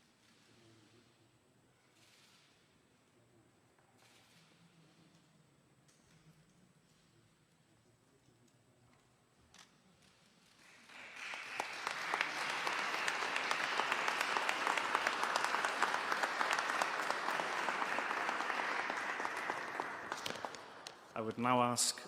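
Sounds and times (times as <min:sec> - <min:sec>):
audience applauding: 0:10.6 - 0:21.8.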